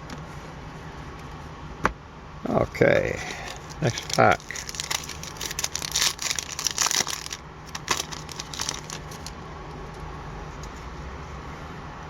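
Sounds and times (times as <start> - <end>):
steady low hum: 0.0 - 12.0
card pack wrapper tearing and crinkling: 3.2 - 9.3
faint rustles and clicks: 3.2 - 11.0.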